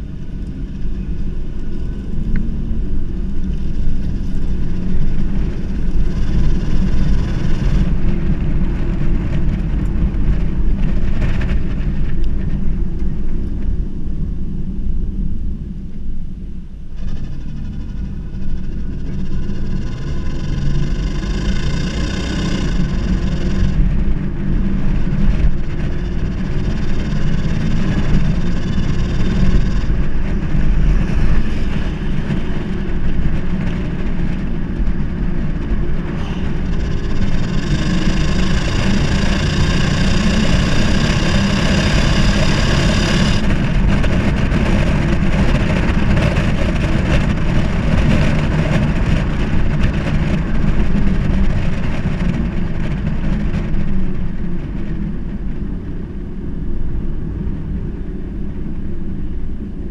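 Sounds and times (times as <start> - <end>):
car engine revving: 17.9 - 53.0.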